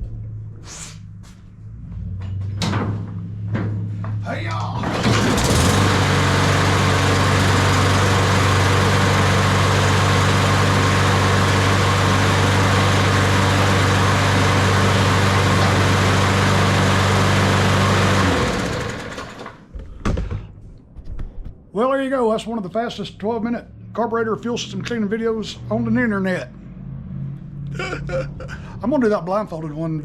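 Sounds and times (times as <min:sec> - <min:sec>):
lawn mower engine running: 0:04.8 - 0:19.7.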